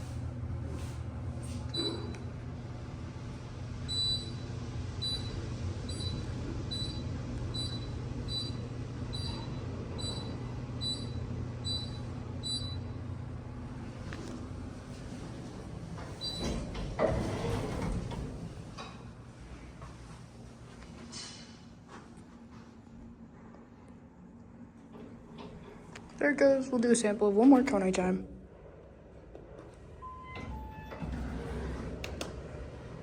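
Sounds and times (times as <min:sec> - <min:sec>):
low hum of elevator car: 0:00.0 - 0:33.0
elevator signal beeping: 0:01.7 - 0:02.2, 0:03.8 - 0:13.0, 0:16.2 - 0:16.6, 0:30.0 - 0:31.8.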